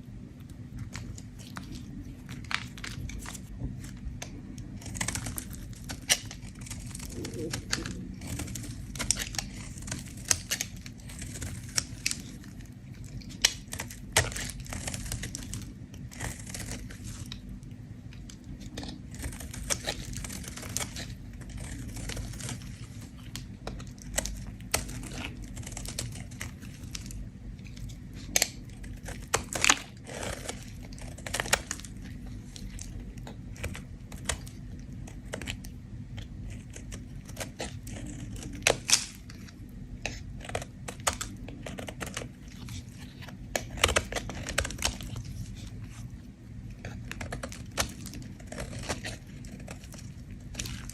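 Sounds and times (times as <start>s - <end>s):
blade scraping soap: 36.2s - 50.9s.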